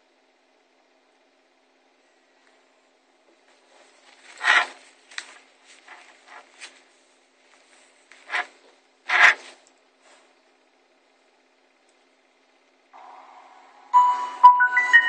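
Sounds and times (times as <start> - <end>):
handling rubbing and scraping: 3.4 - 10.5.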